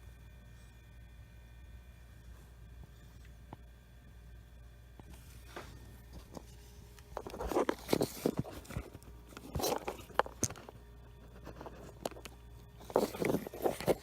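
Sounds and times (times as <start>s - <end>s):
faint steady hum: 0.0s - 14.0s
tools scraping and clicking: 6.2s - 14.0s.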